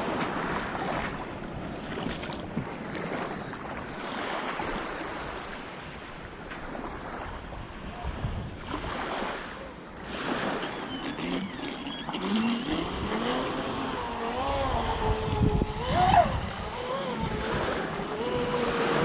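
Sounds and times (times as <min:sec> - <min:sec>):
water splashing: 0:00.0 - 0:19.0
wind noise: 0:07.1 - 0:09.3, 0:12.7 - 0:19.0
electric boat motor whining: 0:09.7 - 0:19.0.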